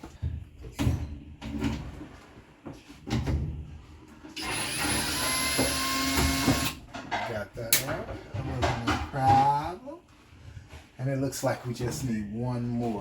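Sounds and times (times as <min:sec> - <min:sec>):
knocks and clunks of metal parts: 0:04.4 - 0:09.7.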